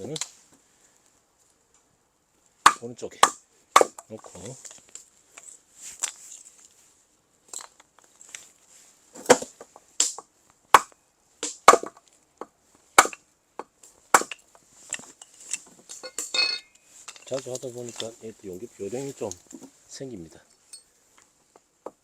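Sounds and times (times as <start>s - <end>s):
axe chopping wood: 2.6s - 4.1s, 9.2s - 12.0s, 13.0s - 14.4s.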